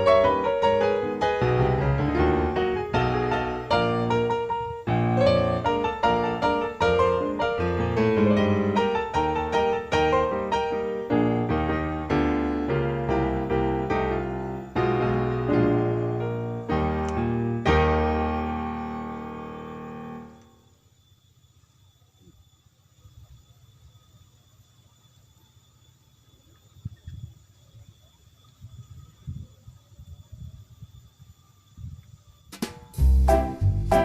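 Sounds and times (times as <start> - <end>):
piano music: 0.0 - 20.4, 32.6 - 34.0.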